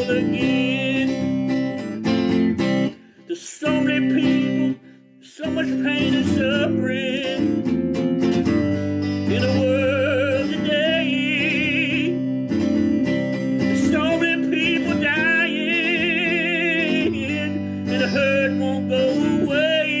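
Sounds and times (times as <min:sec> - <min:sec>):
person singing wordless notes: 0:00.0 - 0:01.4, 0:03.0 - 0:07.6, 0:09.1 - 0:12.5, 0:13.6 - 0:20.0
acoustic guitar: 0:00.0 - 0:20.0.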